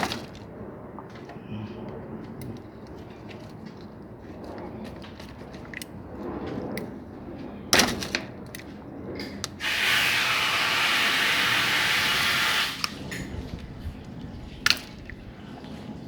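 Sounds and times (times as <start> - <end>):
hissing spray: 9.6 - 13.4.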